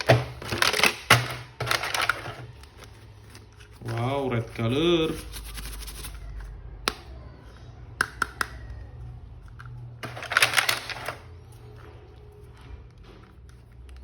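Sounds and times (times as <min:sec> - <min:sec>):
plastic toy packaging clicking: 0:00.0 - 0:02.9, 0:09.5 - 0:11.2
packaging rustling: 0:00.0 - 0:06.0, 0:10.0 - 0:11.3.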